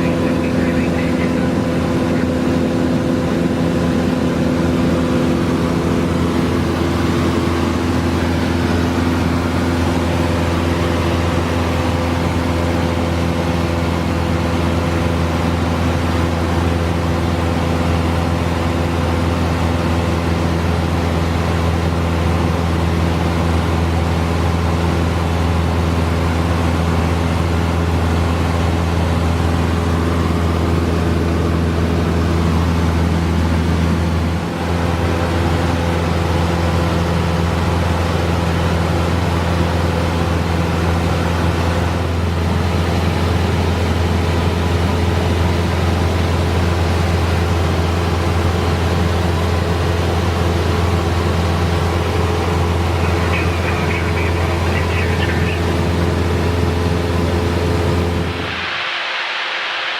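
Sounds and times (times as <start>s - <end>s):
airplane engine and propeller drone: 0.0s - 59.9s
rushing air noise: 52.7s - 59.9s.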